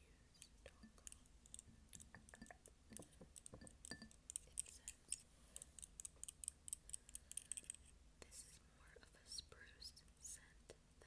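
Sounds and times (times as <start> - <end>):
tapping on glass jar: 0.7 - 5.2.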